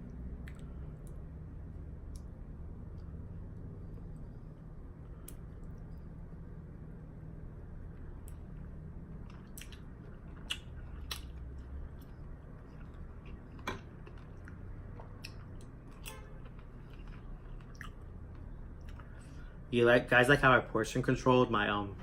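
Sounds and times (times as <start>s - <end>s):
steady low background hum: 0.0s - 22.0s
wet mouth clicks and smacks: 0.4s - 0.8s
person chewing food: 7.9s - 19.4s.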